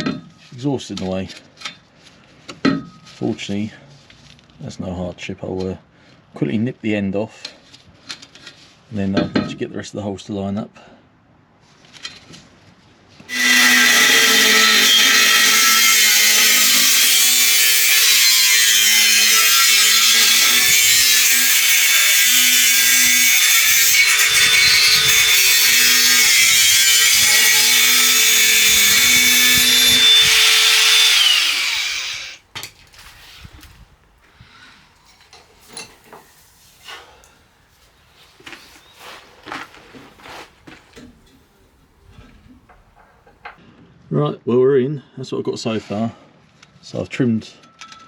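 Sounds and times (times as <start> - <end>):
power tool cutting steel pipe: 13.3 - 32.4.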